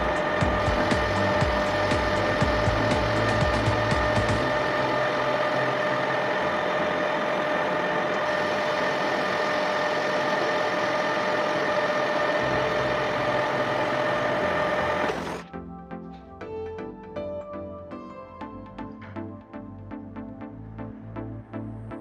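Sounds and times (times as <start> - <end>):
music: 0.0 - 7.4, 12.2 - 22.0
lathe running with a whine: 0.0 - 15.4.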